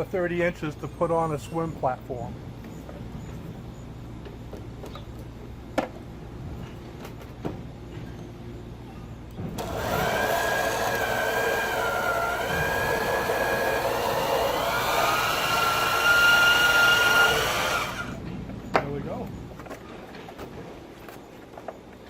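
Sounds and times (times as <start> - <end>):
band saw cutting wood: 9.6 - 18.2.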